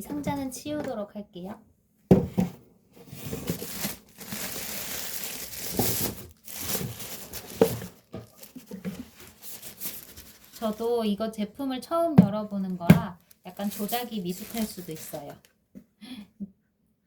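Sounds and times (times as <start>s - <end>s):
knock: 2.1s - 2.6s
packaging crinkling and tearing: 3.2s - 11.0s, 12.7s - 15.5s.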